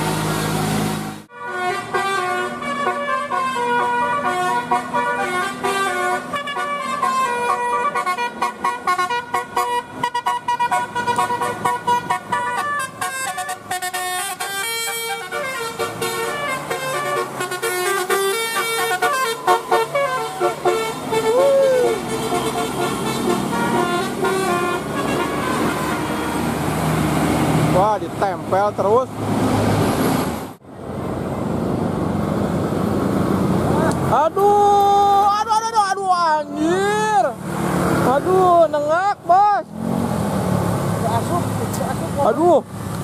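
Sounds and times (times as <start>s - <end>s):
musical bus horn tune: 1.2s - 27.0s.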